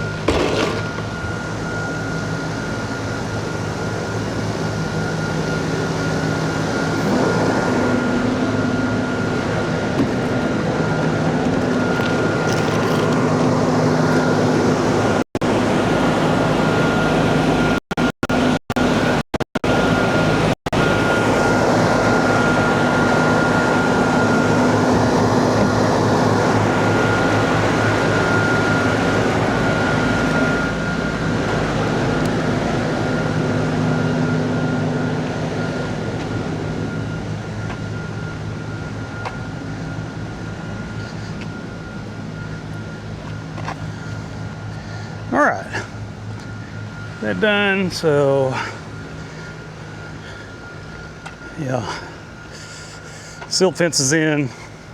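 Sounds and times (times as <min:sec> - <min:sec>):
diesel engine running: 0:00.0 - 0:54.9
high whine: 0:00.0 - 0:54.9.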